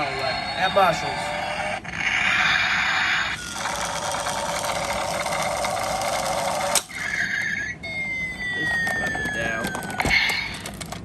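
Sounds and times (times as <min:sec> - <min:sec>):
toy car electronic buzzing: 0:00.0 - 0:11.0.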